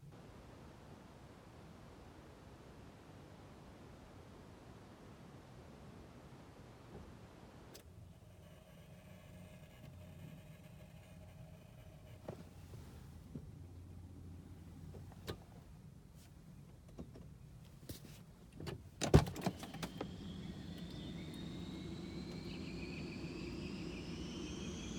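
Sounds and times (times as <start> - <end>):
low hum: 19.4 - 24.9
rising whine: 19.4 - 24.9.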